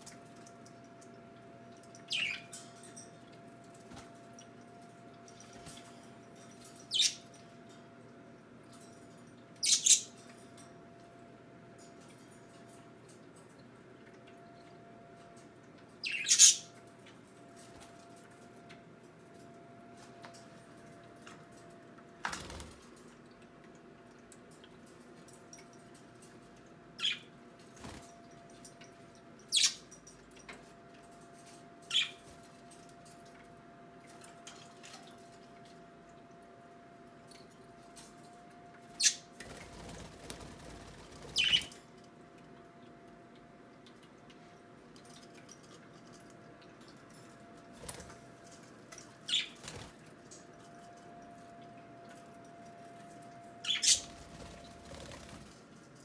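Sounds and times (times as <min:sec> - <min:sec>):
faint steady hum: 0:00.0 - 0:56.0
budgerigars chirping: 0:53.7 - 0:54.0.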